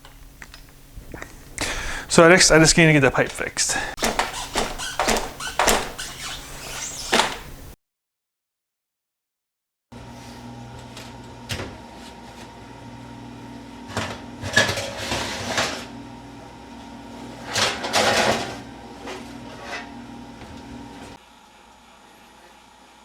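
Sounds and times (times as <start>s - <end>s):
steady low hum: 0.0s - 7.8s
parts knocking and rattling: 3.2s - 6.0s.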